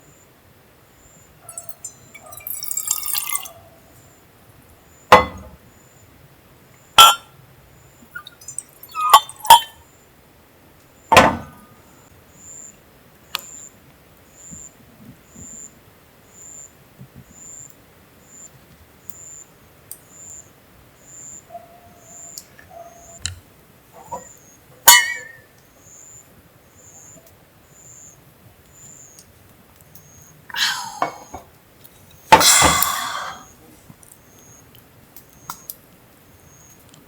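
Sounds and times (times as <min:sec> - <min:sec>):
dishes and utensils clinking: 0:07.0 - 0:07.2.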